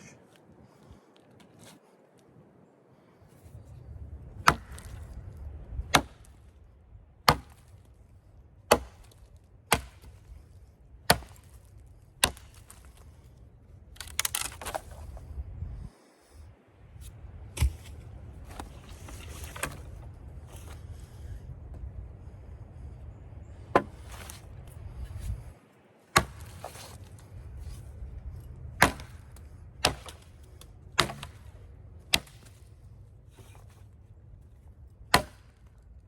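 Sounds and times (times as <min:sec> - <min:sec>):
hatchet chopping wood: 0:04.4 - 0:05.1, 0:05.9 - 0:06.3, 0:07.2 - 0:07.8, 0:08.7 - 0:10.2, 0:11.1 - 0:13.0, 0:23.7 - 0:24.4, 0:26.2 - 0:27.0, 0:28.8 - 0:32.7, 0:35.1 - 0:35.7.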